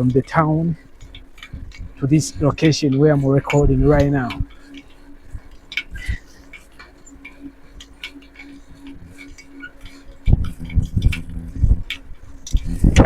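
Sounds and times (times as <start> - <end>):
bicycle ticks and clicks: 0.0 - 13.0
heavy low thumps: 1.5 - 4.5, 10.2 - 13.0.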